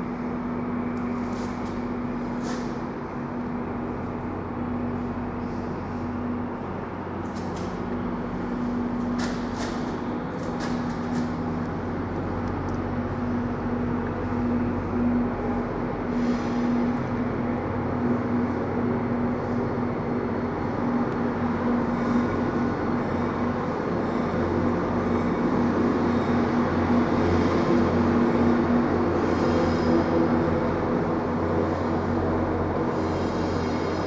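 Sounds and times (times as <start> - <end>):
train running: 0.0 - 34.0.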